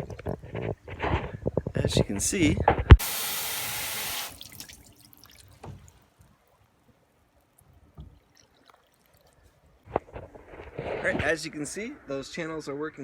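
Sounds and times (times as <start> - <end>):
hose nozzle spraying water: 3.0 - 4.9
water dripping: 3.0 - 6.7, 7.3 - 9.7.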